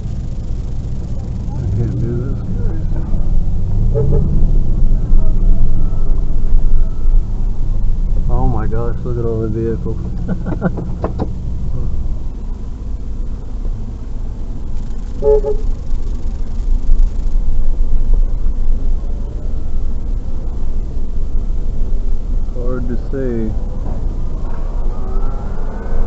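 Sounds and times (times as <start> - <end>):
road rumble: 0.0 - 26.0
vehicle engine: 0.0 - 26.0
short car horn toot: 15.2 - 15.7.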